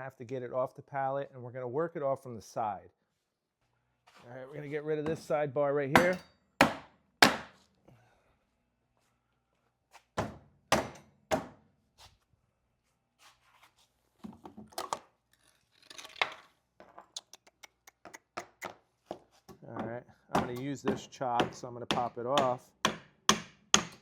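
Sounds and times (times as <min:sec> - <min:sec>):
hammer striking wood: 0:06.0 - 0:07.6, 0:10.2 - 0:11.6, 0:20.3 - 0:24.0.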